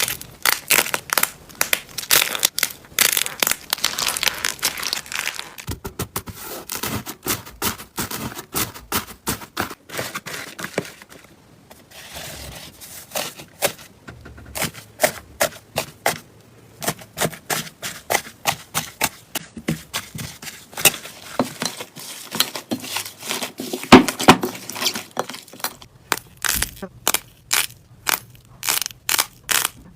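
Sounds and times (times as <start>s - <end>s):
slime crackling when squeezed: 0.0s - 5.7s.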